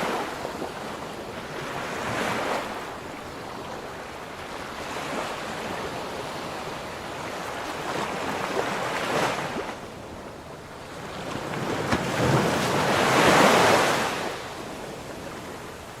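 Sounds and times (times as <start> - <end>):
sea waves breaking: 10.7 - 16.0.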